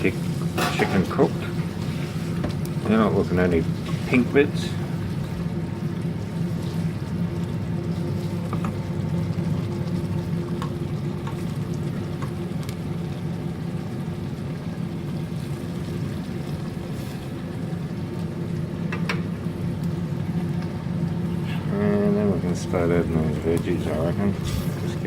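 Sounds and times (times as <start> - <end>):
food bubbling in a pan: 0.0 - 25.0
low mechanical hum: 0.0 - 25.0.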